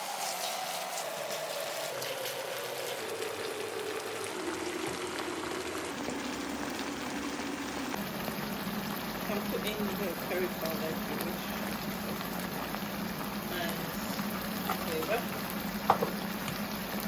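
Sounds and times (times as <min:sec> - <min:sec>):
stew sizzling in a pot: 0:00.0 - 0:17.0.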